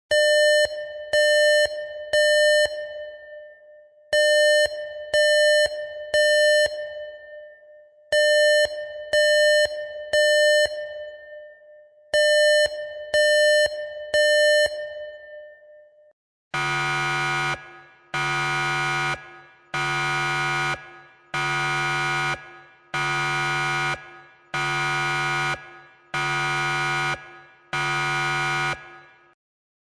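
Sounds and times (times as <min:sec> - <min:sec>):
electronic alarm beeping: 0:16.6 - 0:29.3
harsh low buzzer-horn blasts: 0:16.6 - 0:29.3.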